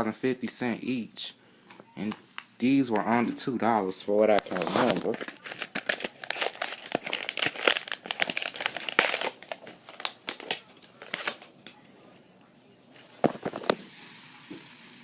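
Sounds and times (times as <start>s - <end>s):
plastic packaging crinkling: 4.3s - 12.5s.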